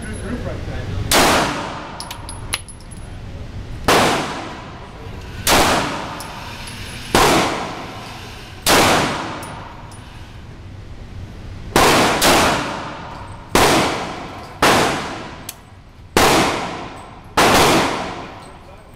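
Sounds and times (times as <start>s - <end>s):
handgun shots echoing: 16.2s - 18.4s.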